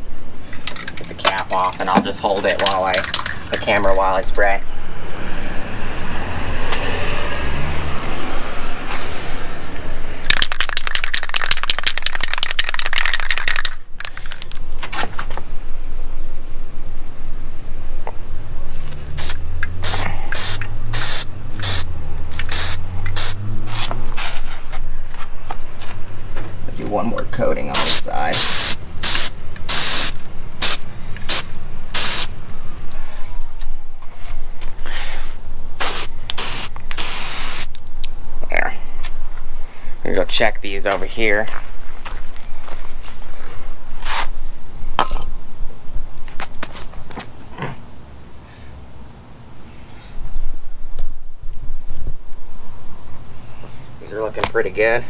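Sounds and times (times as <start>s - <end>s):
spray can ball rattling: 0.5s - 3.7s, 10.2s - 14.6s, 18.8s - 23.4s, 27.8s - 32.4s, 35.8s - 37.8s.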